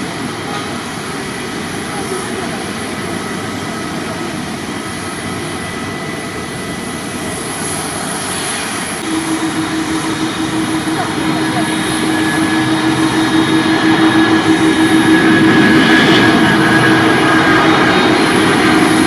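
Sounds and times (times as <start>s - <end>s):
jet engines rushing: 0.0s - 19.0s
high whine: 7.9s - 19.0s
low hum: 9.0s - 19.0s.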